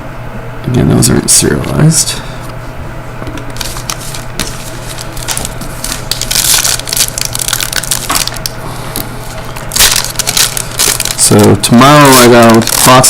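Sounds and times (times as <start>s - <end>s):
cards rustling: 3.4s - 13.0s
wrapper crinkling and tearing: 3.5s - 13.0s.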